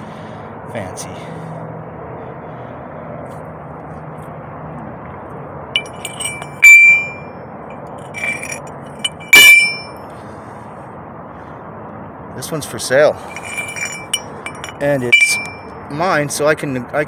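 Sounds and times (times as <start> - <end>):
metal nugget struck ringing: 5.8 - 7.3, 8.0 - 10.0, 13.3 - 15.7.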